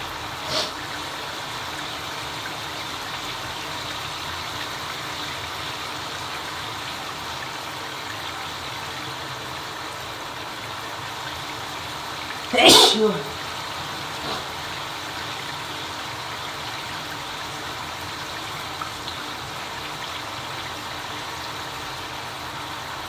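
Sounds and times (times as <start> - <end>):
shower water spraying: 0.3 - 0.9, 12.6 - 15.8.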